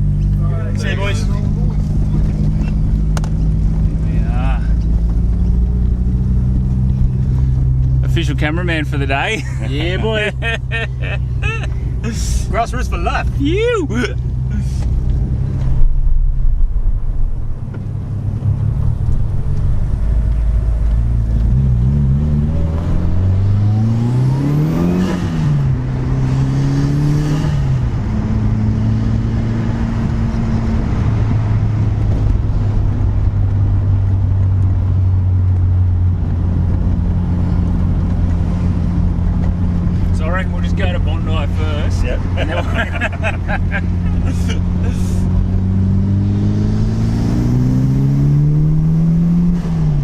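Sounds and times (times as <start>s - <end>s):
car engine accelerating: 0.0s - 50.0s.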